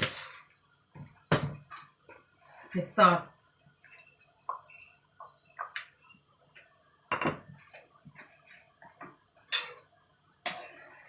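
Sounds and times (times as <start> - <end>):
utensils and dishes clinking: 9.5 - 9.9.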